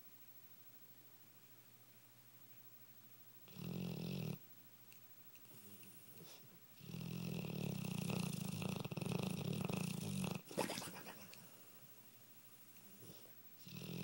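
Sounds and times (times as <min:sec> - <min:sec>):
dog snoring: 0:03.5 - 0:04.4, 0:05.5 - 0:11.3, 0:12.9 - 0:14.0
dog snorting: 0:05.5 - 0:11.4, 0:12.9 - 0:14.0
dog breathing quietly: 0:12.8 - 0:13.4.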